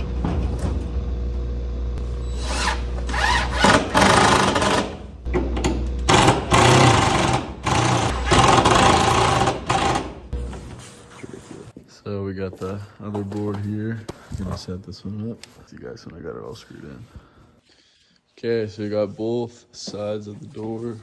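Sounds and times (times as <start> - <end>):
power drill driving screws: 2.3 - 5.0, 6.1 - 10.2.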